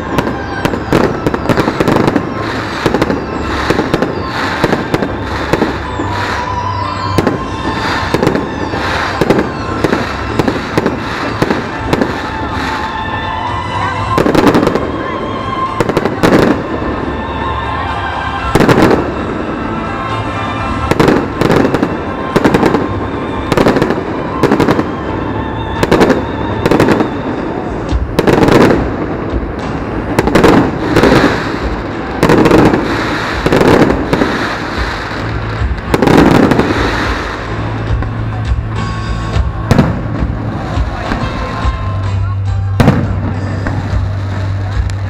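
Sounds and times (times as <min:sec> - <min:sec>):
fireworks bursting: 0:00.0 - 0:45.0.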